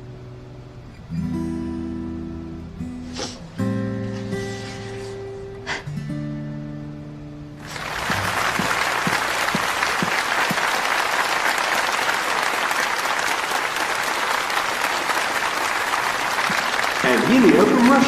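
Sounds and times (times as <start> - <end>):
audience applauding: 7.6 - 18.0.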